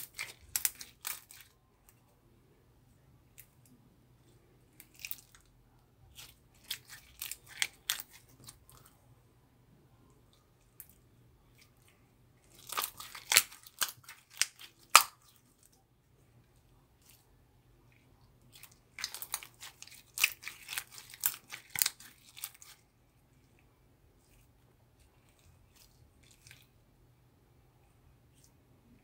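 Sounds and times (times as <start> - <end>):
slime crackling and popping: 0.0 - 1.5, 12.5 - 15.4, 18.5 - 22.8.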